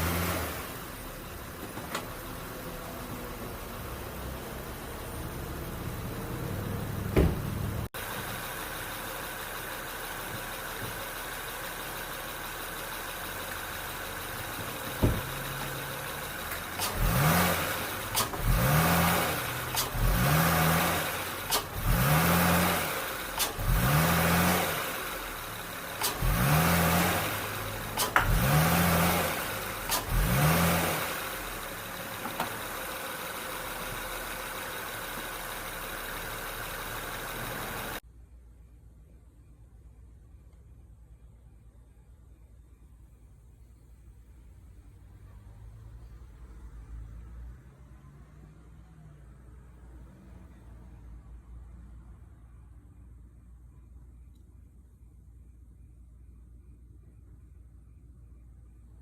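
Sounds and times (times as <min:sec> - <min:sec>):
car engine idling and revving: 0:00.0 - 0:38.0, 0:44.2 - 0:52.7.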